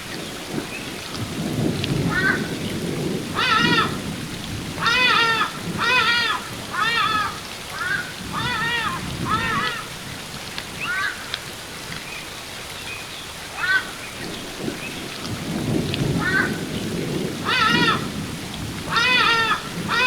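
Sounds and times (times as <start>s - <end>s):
waterfall rushing: 0.0s - 20.0s
ibis nasal calls: 18.9s - 20.0s.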